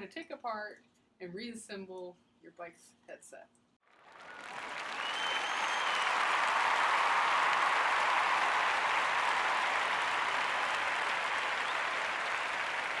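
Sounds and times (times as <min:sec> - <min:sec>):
group applause: 0:03.9 - 0:13.0.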